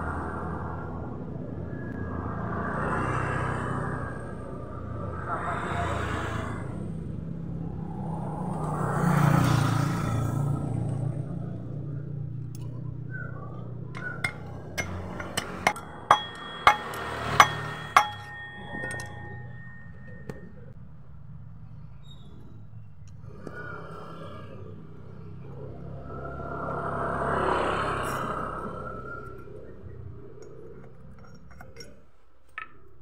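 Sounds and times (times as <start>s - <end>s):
hammer tapping on metal: 14.0s - 20.4s.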